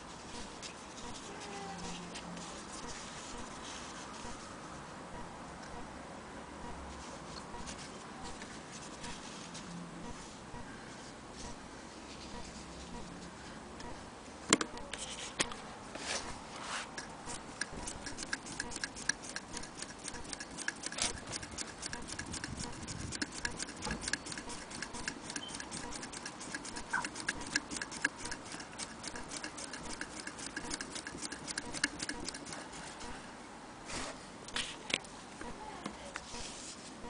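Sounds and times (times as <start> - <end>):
sewing machine mechanical ticking: 17.2 - 33.2.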